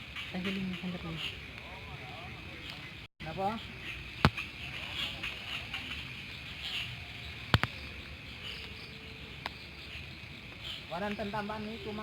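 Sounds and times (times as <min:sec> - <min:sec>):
night insects chirping: 0:03.2 - 0:12.0.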